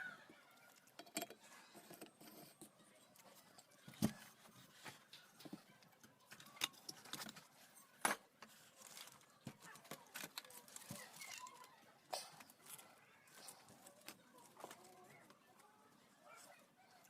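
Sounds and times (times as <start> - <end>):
metal parts and tools clinking: 0.6 - 11.8.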